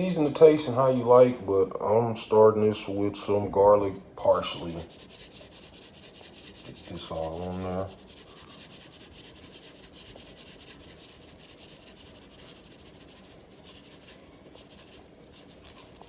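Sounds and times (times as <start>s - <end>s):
hands rubbing meat: 4.2s - 16.0s.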